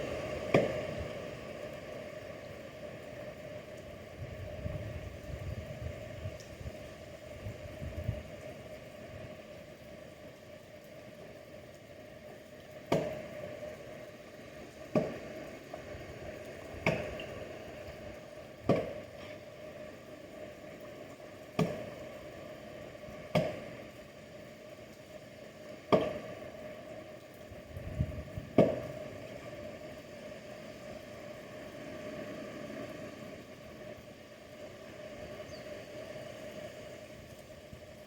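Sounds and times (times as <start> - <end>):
axe chopping wood: 12.9 - 13.2, 23.3 - 23.6, 25.9 - 26.2, 28.6 - 28.8.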